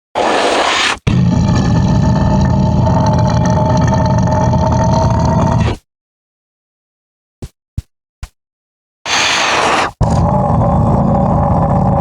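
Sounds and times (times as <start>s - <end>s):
hissing demon roar: 0.4s - 5.8s, 9.1s - 12.0s
deep rattling growl: 1.1s - 5.8s, 10.0s - 12.0s.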